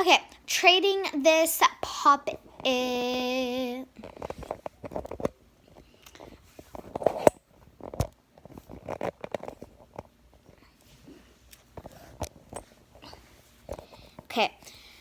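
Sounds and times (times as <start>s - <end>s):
toys rustling and clicking: 4.0s - 14.4s.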